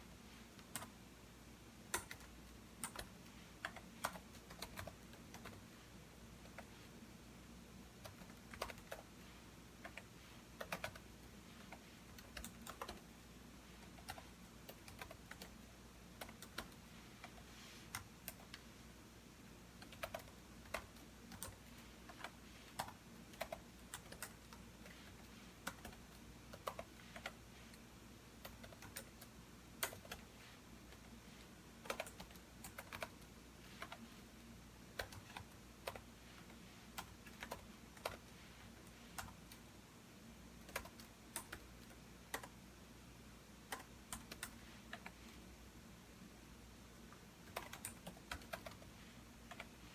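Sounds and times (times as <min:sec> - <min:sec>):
faint low hum: 0:00.0 - 0:49.9
keyboard typing: 0:00.6 - 0:01.0, 0:01.9 - 0:05.6, 0:08.0 - 0:09.1, 0:09.8 - 0:13.1, 0:13.8 - 0:15.6, 0:16.2 - 0:18.6, 0:19.8 - 0:27.4, 0:28.4 - 0:31.2, 0:31.8 - 0:34.2, 0:34.9 - 0:39.7, 0:40.6 - 0:42.6, 0:43.6 - 0:45.4, 0:47.4 - 0:49.8.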